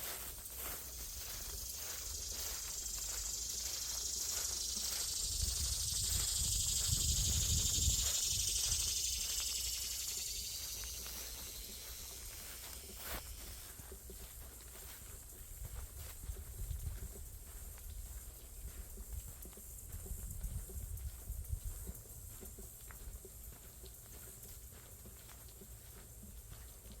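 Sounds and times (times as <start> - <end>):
high insect buzz: 0.0 - 17.0
footsteps on a trail: 0.0 - 27.0.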